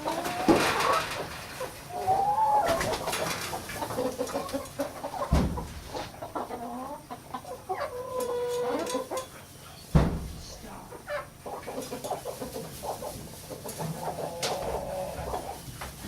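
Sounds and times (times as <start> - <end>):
chickens clucking: 0.0 - 16.0
low thump: 9.9 - 10.4.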